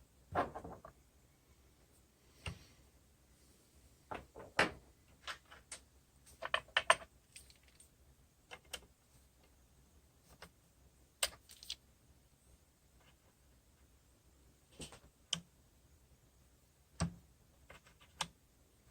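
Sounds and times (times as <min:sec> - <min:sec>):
small parts and tools clicking: 0:05.1 - 0:09.6, 0:11.2 - 0:11.9, 0:17.0 - 0:18.4.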